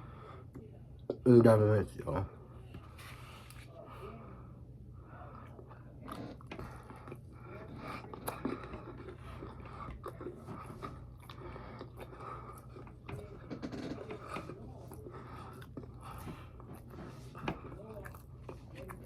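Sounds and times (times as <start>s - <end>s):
steady low hum: 0.0s - 19.0s
person chewing: 5.3s - 19.0s.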